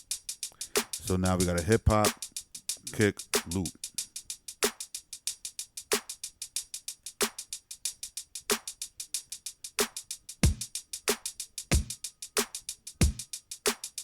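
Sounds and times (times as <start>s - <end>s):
fast hi-hats: 0.0s - 14.0s
deep kick drums: 10.4s - 10.7s, 11.7s - 12.0s, 13.0s - 13.2s.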